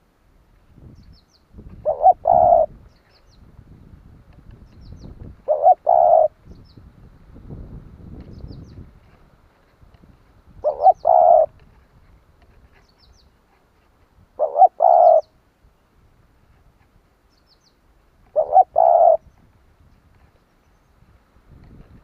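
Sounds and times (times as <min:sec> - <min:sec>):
dove cooing: 0:01.7 - 0:02.8, 0:05.4 - 0:06.4, 0:10.6 - 0:11.6, 0:14.4 - 0:15.3, 0:18.3 - 0:19.3
small bird chirping: 0:04.6 - 0:06.8, 0:10.6 - 0:11.5, 0:12.7 - 0:13.4, 0:14.4 - 0:15.4, 0:17.3 - 0:21.0.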